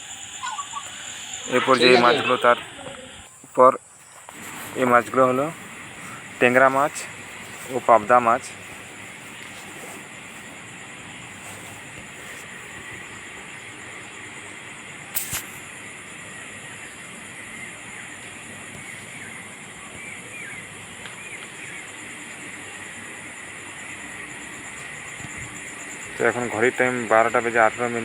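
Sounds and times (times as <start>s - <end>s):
high-pitched drone: 0.0s - 3.3s.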